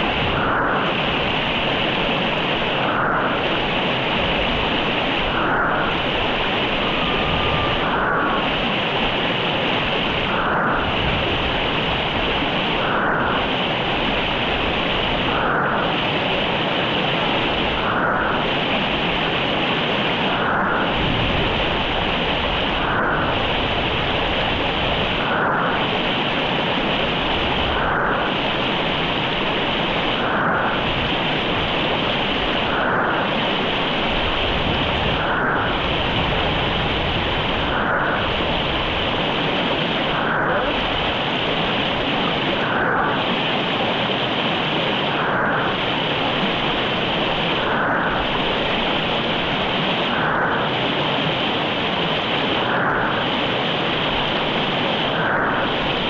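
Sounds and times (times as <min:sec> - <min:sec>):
river rushing over rocks: 0:00.1 - 0:20.2.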